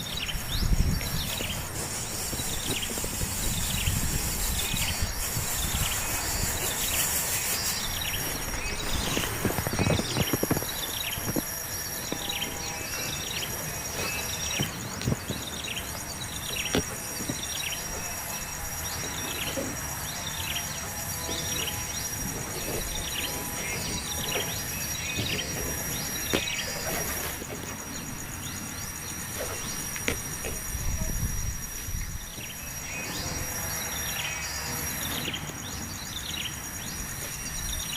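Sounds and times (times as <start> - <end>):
insect drone with pulsing trill: 0.0 - 37.9
small birds chirping: 0.0 - 37.9.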